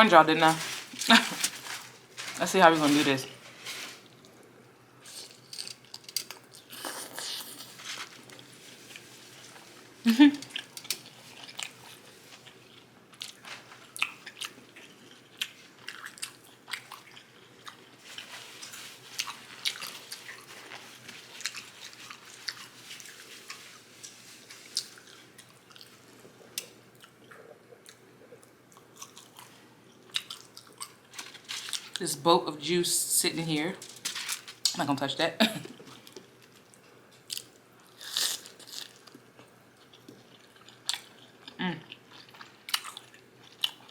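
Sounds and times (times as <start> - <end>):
person biting and chewing: 5.1 - 8.4.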